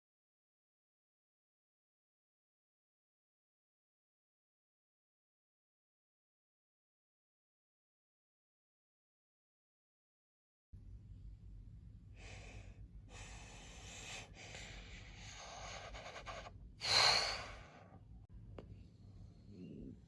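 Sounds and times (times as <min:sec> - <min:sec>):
breathy hissing mouth noises: 0:13.1 - 0:17.9.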